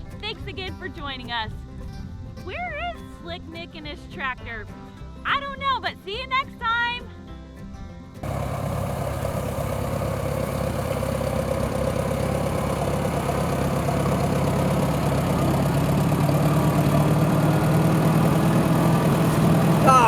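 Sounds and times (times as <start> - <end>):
tractor engine running: 8.2 - 20.0.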